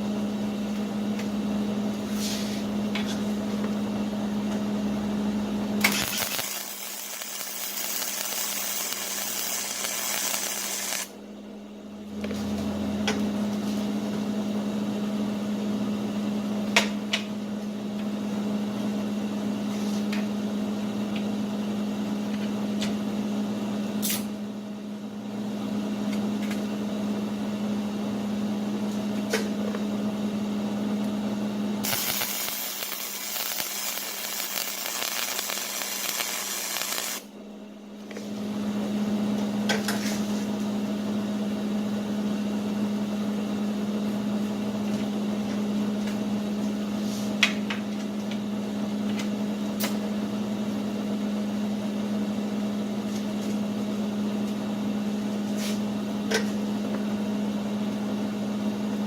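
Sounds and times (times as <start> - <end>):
steady machine hum: 0.0 - 16.6, 24.4 - 39.7
loud hiss: 5.9 - 11.1, 31.8 - 37.2.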